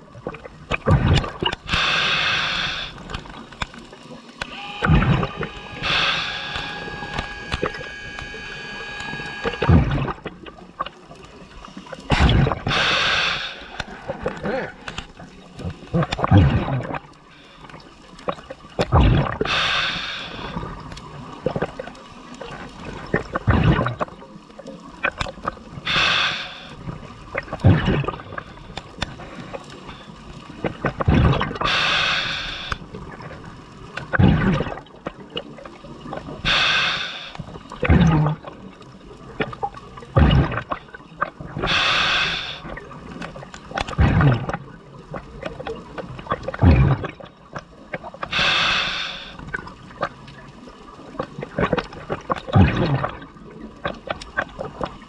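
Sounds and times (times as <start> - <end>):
exhaled bubbles gurgling: 0.0 - 55.0
regulator hissing inhalation: 1.6 - 3.3, 4.4 - 10.1, 12.6 - 15.1, 19.4 - 20.7, 25.8 - 26.8, 31.6 - 32.8, 36.4 - 37.5, 41.6 - 42.7, 48.3 - 49.4.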